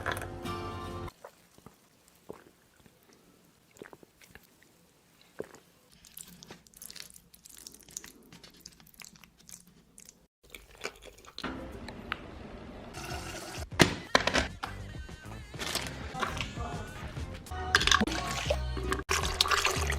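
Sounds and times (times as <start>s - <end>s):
chewing and crunching food: 1.1s - 11.6s.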